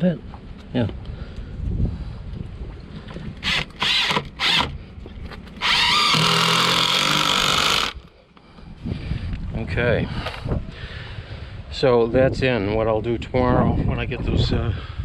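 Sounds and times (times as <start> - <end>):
power drill driving screw: 3.4 - 4.7, 5.6 - 8.0.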